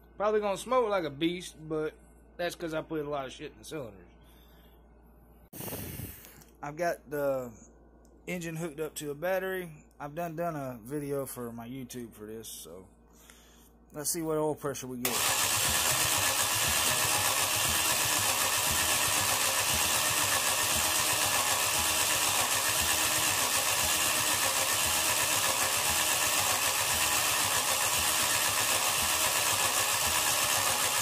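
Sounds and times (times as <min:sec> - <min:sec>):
engine cranking on starter motor: 0:15.0 - 0:31.0.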